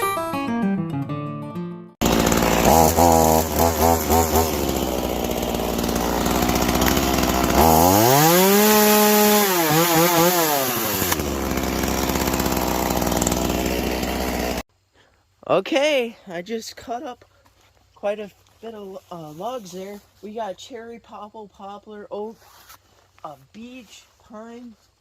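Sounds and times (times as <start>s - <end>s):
chainsaw revving and idling: 2.0s - 14.7s.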